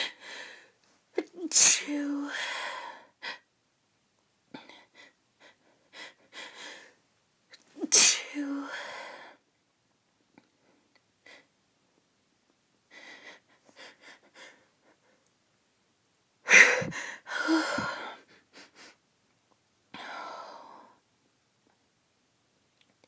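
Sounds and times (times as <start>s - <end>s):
soft breathy sound: 0.0s - 3.4s, 16.5s - 19.0s, 19.9s - 21.1s
woman sneezing: 1.4s - 2.4s, 7.8s - 8.8s
faint catching breaths: 16.5s - 19.0s.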